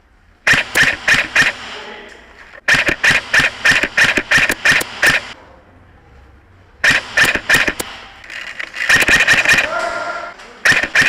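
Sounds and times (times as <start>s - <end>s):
airsoft rifle firing shots: 0.5s - 2.0s, 2.6s - 5.4s, 6.8s - 11.0s.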